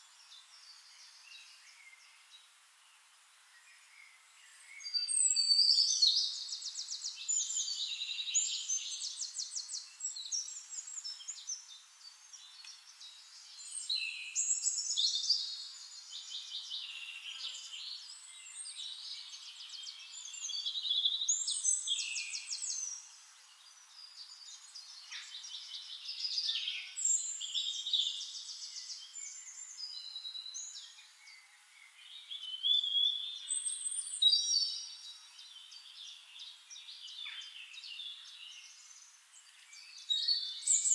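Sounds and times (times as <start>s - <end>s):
songbirds singing: 0.0s - 40.9s.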